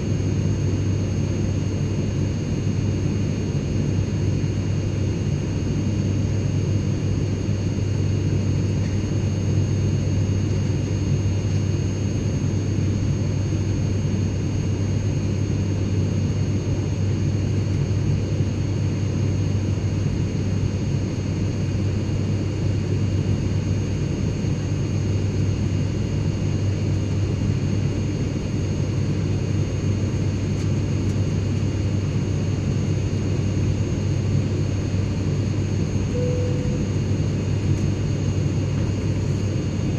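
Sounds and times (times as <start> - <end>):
airplane cabin drone: 0.0 - 39.9
faint high whines: 35.8 - 39.9.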